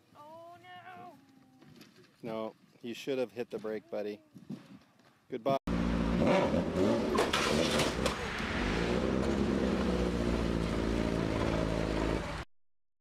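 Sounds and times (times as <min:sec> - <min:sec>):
vehicle engine running: 0:05.7 - 0:12.4.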